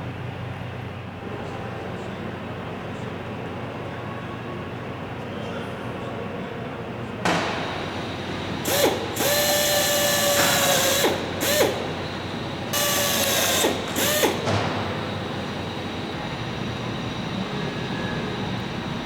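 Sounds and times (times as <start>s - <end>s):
power drill whining: 7.7s - 16.1s.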